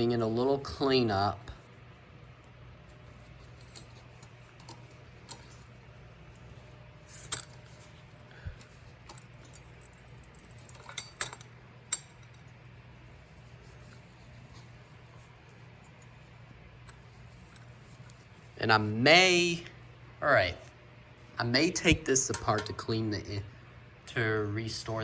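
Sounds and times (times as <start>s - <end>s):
light clicks and clinks of fan parts: 2.4s - 12.6s, 22.2s - 22.9s.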